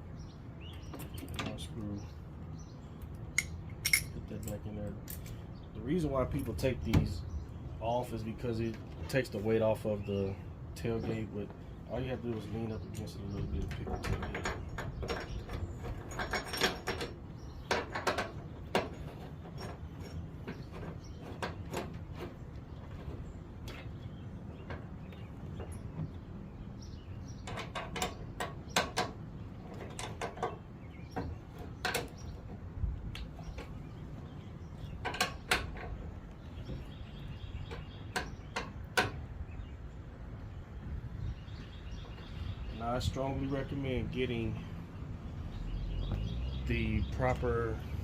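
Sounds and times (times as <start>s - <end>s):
metal hardware and tools clicking: 3.4s - 5.4s, 12.9s - 20.2s
metallic clicks of hand tools: 3.4s - 5.4s.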